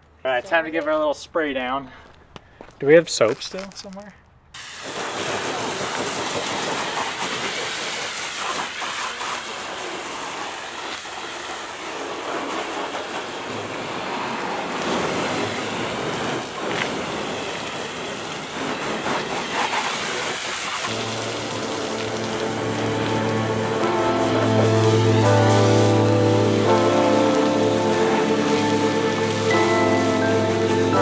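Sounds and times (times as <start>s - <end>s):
water spraying on truck: 4.6s - 31.0s
music: 21.0s - 31.0s.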